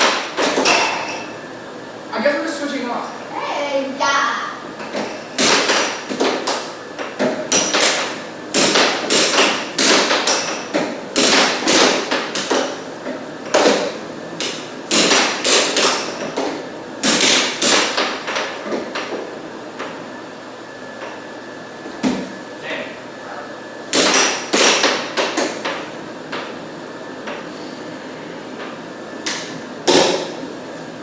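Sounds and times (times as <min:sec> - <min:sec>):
air hockey puck clacking: 0:00.0 - 0:01.1, 0:04.8 - 0:20.0, 0:23.9 - 0:26.6, 0:28.6 - 0:30.4.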